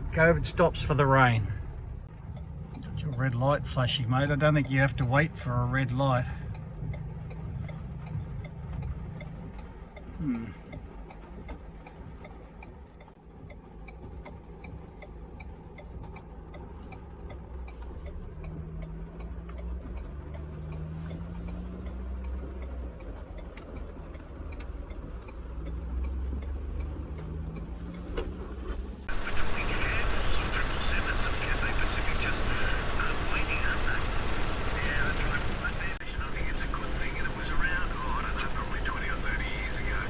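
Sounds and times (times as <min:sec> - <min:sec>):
turn signal clicking: 0:06.2 - 0:40.0
passing traffic: 0:18.1 - 0:24.0, 0:24.8 - 0:40.0
engine idling: 0:29.0 - 0:40.0.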